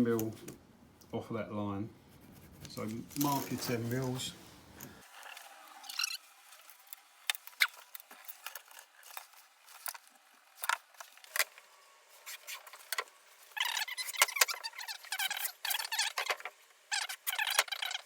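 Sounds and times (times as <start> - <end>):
pencil scratchy scraping: 2.1 - 4.1.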